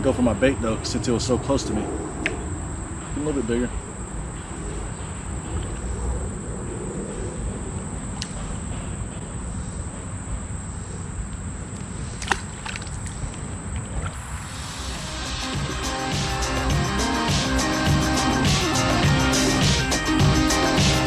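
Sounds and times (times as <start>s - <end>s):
low rumble: 0.0s - 9.6s
high-pitched insect drone: 0.0s - 21.0s.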